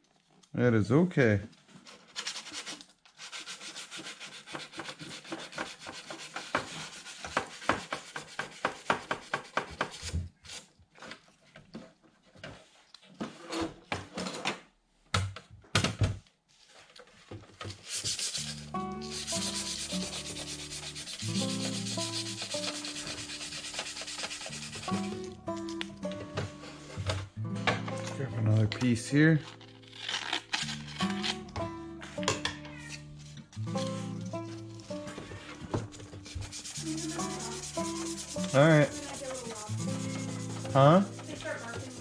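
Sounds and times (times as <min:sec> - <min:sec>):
hand sanding scrubbing strokes: 0:02.2 - 0:10.0, 0:17.8 - 0:25.3, 0:36.2 - 0:42.0
background music: 0:18.2 - 0:42.0.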